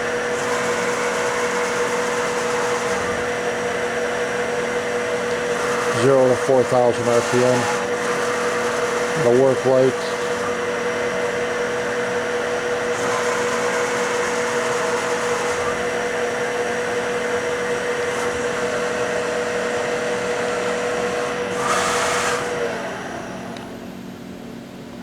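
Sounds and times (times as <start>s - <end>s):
milling machine whine and hum: 0.0s - 25.0s.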